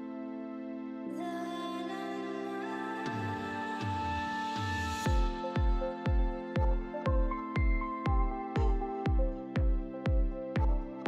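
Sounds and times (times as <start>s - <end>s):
electronic music with kick drum: 3.1s - 11.0s.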